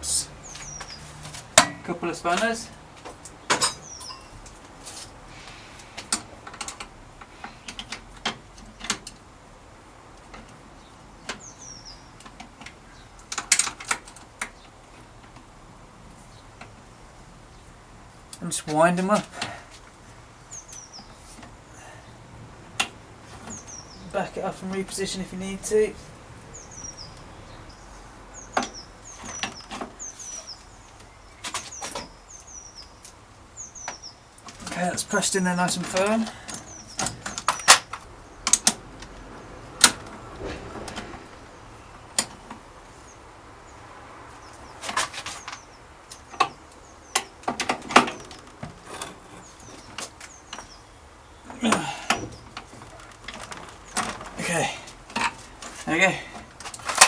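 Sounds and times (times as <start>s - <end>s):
bird chirping: 0.0s - 5.7s, 10.6s - 13.3s, 20.1s - 47.5s, 49.2s - 53.0s
spanners clicking on metal: 3.5s - 4.6s.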